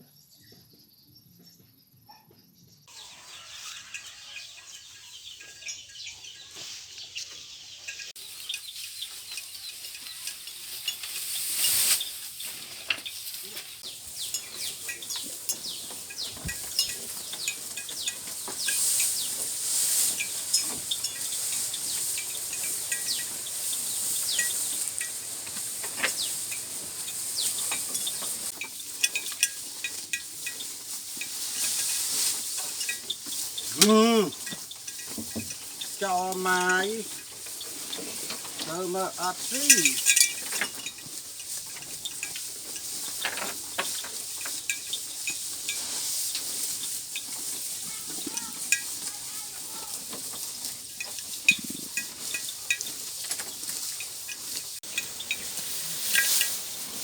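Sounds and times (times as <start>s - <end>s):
rustling stems: 3.3s - 57.0s.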